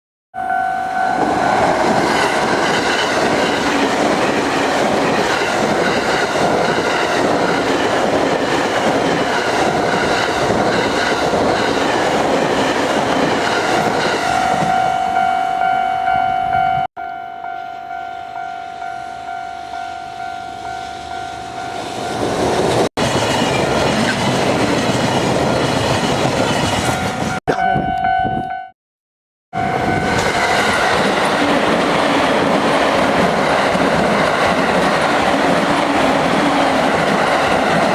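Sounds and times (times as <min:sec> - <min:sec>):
level crossing warning bell dinging: 0:00.4 - 0:06.0, 0:14.2 - 0:22.3, 0:27.0 - 0:28.7, 0:29.6 - 0:31.0
train rumble and wheel clatter: 0:01.0 - 0:15.3, 0:21.1 - 0:28.0, 0:29.6 - 0:37.9.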